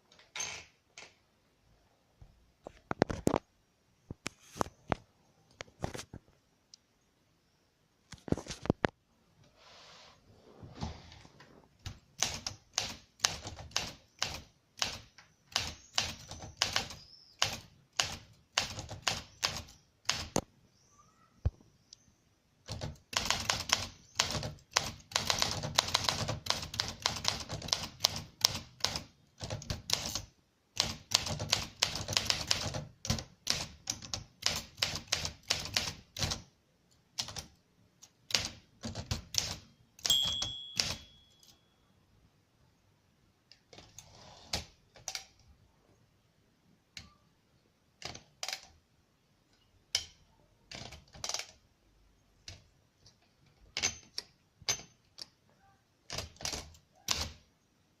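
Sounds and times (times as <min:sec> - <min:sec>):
manual typewriter typing: 0:11.8 - 0:20.4, 0:22.6 - 0:36.5, 0:37.2 - 0:41.5, 0:56.1 - 0:57.4.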